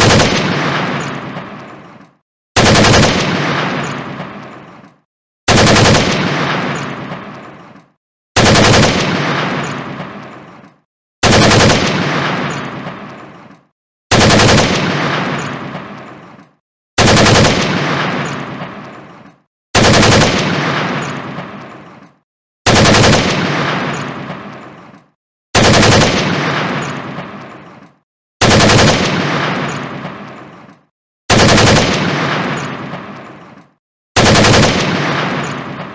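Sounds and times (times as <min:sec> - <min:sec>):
automatic gunfire bursts: 0:00.0 - 0:01.4, 0:02.6 - 0:04.2, 0:05.5 - 0:07.1, 0:08.4 - 0:10.0, 0:11.2 - 0:12.7, 0:14.1 - 0:15.5, 0:17.0 - 0:18.6, 0:19.8 - 0:21.4, 0:22.7 - 0:24.1, 0:25.6 - 0:27.2, 0:28.4 - 0:30.0, 0:31.3 - 0:33.0, 0:34.2 - 0:35.9.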